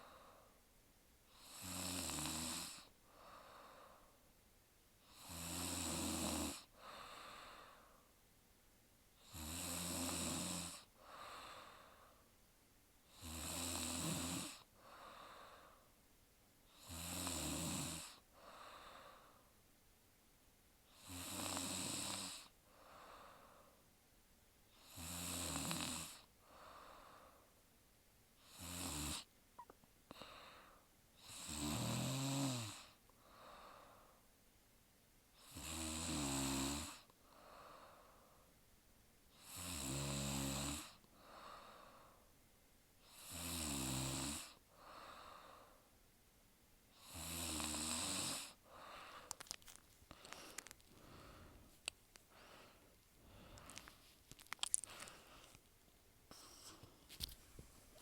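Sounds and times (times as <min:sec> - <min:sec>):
woman snoring: 0:01.3 - 0:02.9, 0:05.1 - 0:07.7, 0:09.2 - 0:11.8, 0:13.1 - 0:15.6, 0:16.7 - 0:18.9, 0:20.9 - 0:22.5, 0:24.8 - 0:26.3, 0:28.4 - 0:29.3, 0:31.2 - 0:33.8, 0:35.4 - 0:37.9, 0:39.4 - 0:41.9, 0:43.0 - 0:45.7, 0:47.0 - 0:49.5.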